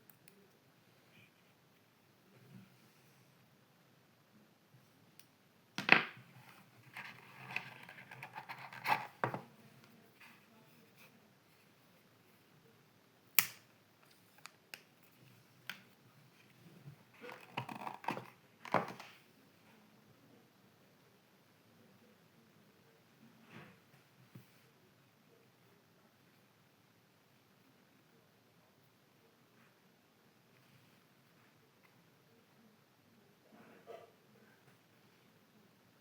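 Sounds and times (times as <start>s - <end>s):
scratchy rustling: 6.4s - 9.6s
sharp clicks and snaps: 13.4s - 14.9s.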